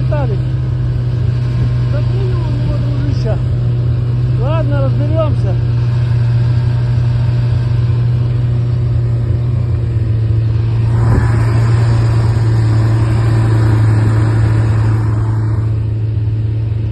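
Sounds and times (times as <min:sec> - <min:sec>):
car engine droning: 0:00.0 - 0:16.9
road noise: 0:00.0 - 0:16.9.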